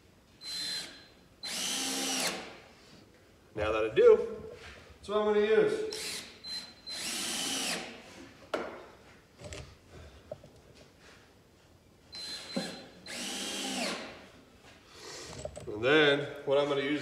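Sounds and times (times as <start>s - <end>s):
power drill driving screws: 0.4s - 2.6s, 5.9s - 8.0s, 12.2s - 14.1s.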